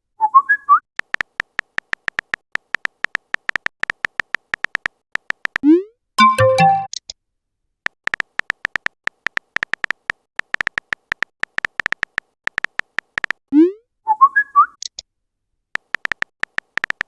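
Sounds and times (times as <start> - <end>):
keyboard typing clicks: 1.0 - 7.0, 8.0 - 13.4, 15.8 - 17.0
short electronic jingle: 6.2 - 6.9.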